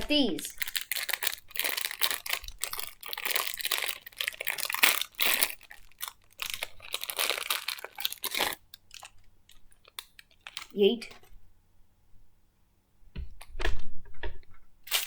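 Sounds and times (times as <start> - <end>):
packaging crinkling: 0.0 - 10.7.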